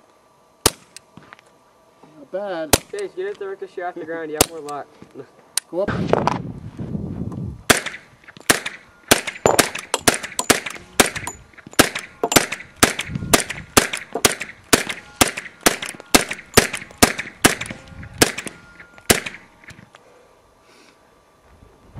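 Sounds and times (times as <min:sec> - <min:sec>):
suppressed pistol shots: 0:07.7 - 0:19.5.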